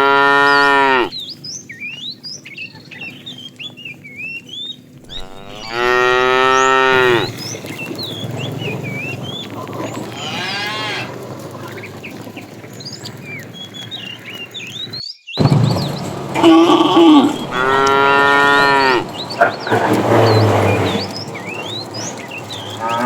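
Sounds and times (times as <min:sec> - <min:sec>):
cow mooing: 0:00.0 - 0:01.1, 0:05.1 - 0:07.4, 0:09.8 - 0:11.2, 0:16.4 - 0:21.6, 0:22.6 - 0:23.0.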